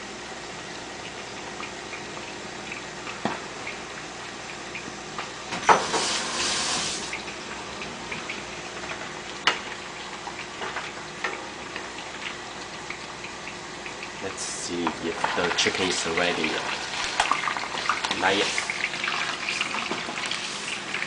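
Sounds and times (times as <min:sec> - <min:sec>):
liquid pouring: 0:05.7 - 0:21.0.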